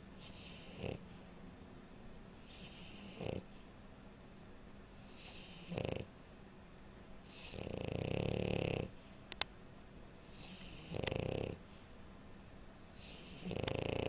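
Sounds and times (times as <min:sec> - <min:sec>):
dog snoring: 0:00.1 - 0:01.1, 0:02.4 - 0:03.5, 0:05.0 - 0:06.1, 0:07.2 - 0:09.0, 0:10.2 - 0:11.6, 0:13.0 - 0:14.0
sharp click: 0:09.3 - 0:09.5.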